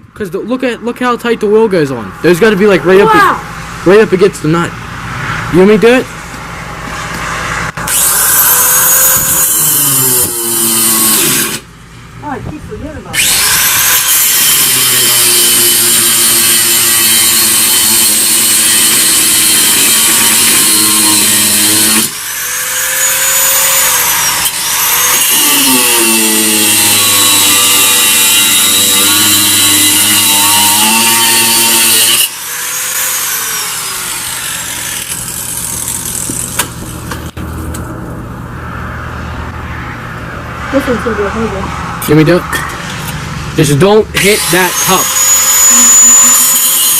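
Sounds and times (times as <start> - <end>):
angle grinder cutting steel: 6.9 - 11.7, 13.1 - 37.3, 42.0 - 46.9.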